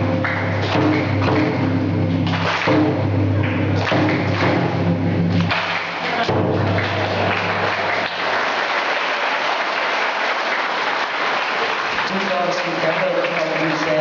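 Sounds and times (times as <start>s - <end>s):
audience applause: 2.3s - 2.8s, 5.4s - 14.0s.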